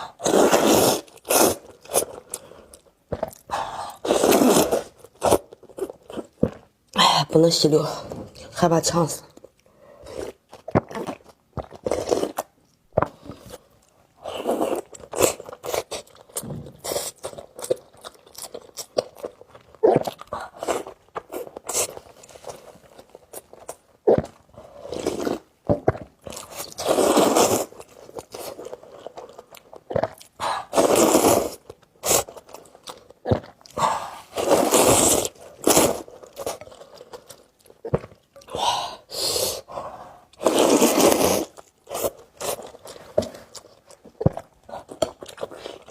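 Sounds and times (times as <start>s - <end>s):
chewing and wet mouth sounds: 9.2s - 26.8s, 27.6s - 30.9s, 41.4s - 45.9s.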